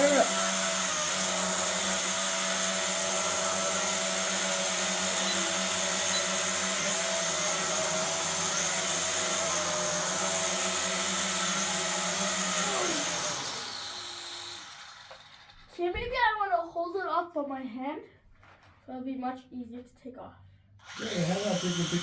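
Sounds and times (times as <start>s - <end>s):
toy drone propellers whirring: 0.0s - 15.8s, 20.8s - 22.0s.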